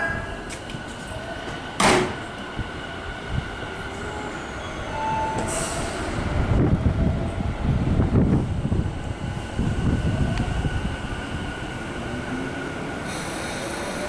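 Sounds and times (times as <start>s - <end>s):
wheel and rail rumble: 0.0s - 14.0s
air hiss: 13.0s - 14.0s.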